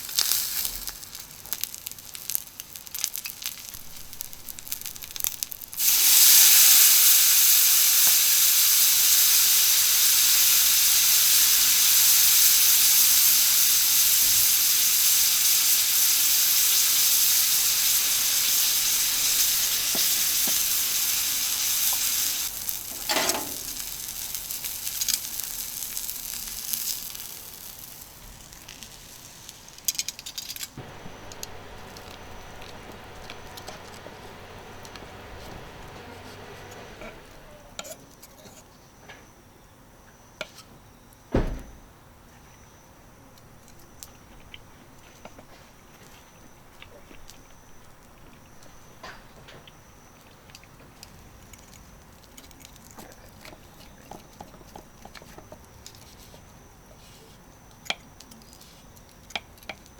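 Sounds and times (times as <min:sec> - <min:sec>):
sizzle and hiss of steam: 0:00.0 - 0:37.8.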